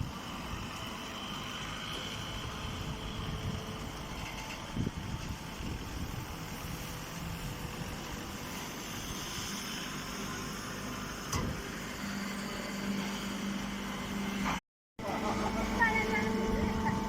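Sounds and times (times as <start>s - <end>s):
hay baler running: 15.0s - 17.0s.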